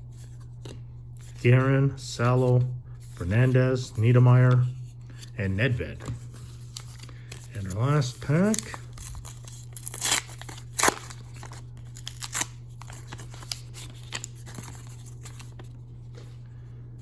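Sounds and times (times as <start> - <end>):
cards rustling: 2.2 - 16.4
wrapper ripping and crinkling: 6.7 - 15.6.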